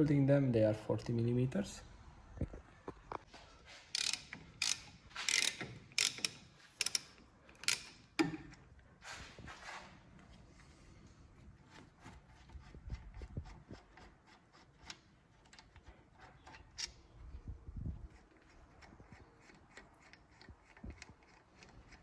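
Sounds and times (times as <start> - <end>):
metal tools clicking and scraping: 3.8 - 8.6, 14.8 - 17.2.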